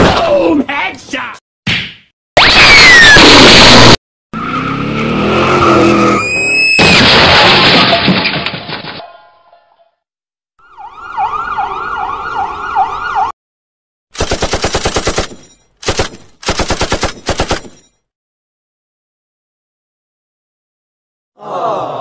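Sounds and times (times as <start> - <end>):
electronic siren whooping: 2.4 - 6.8, 10.6 - 13.4
machine-gun fire: 14.2 - 17.8.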